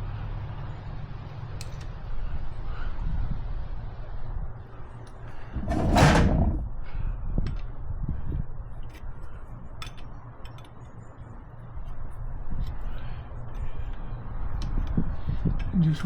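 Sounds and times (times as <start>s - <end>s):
steady low hum: 0.0s - 16.0s
metal clatter: 5.4s - 6.7s.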